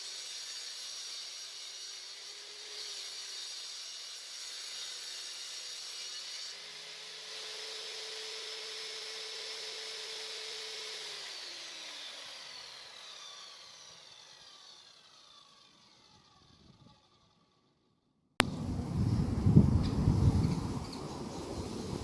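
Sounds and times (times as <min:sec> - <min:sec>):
table saw cutting board: 0:00.0 - 0:16.5
table saw whining: 0:00.0 - 0:17.6.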